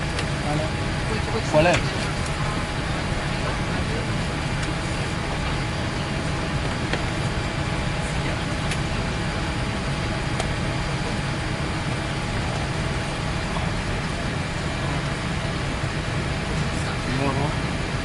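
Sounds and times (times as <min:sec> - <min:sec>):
cabin air conditioning rushing: 0:00.0 - 0:18.0.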